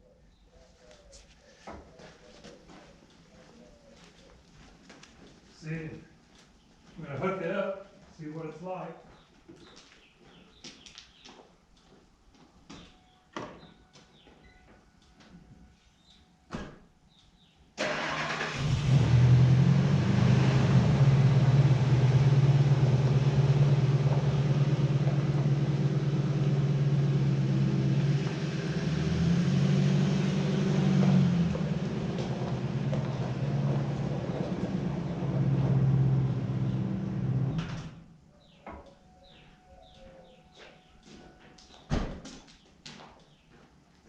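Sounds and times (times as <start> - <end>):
heavy equipment engine humming: 19.6 - 37.9.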